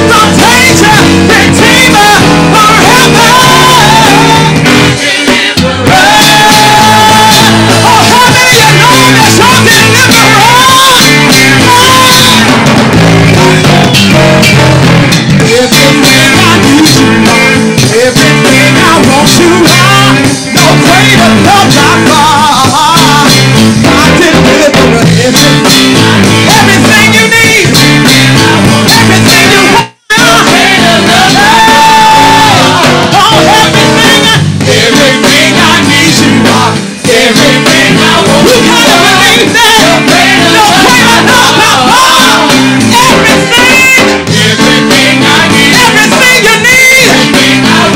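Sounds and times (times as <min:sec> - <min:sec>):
people singing: 0:00.0 - 0:12.7, 0:15.4 - 0:47.9
gospel band with guitar: 0:00.0 - 0:47.9.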